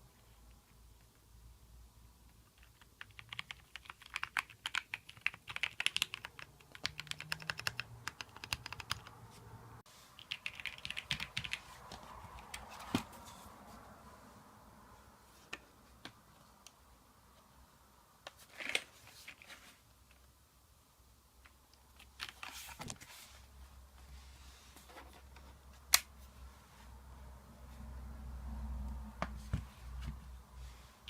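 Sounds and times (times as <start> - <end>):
mechanical keyboard typing: 2.5 - 9.2, 10.2 - 11.6.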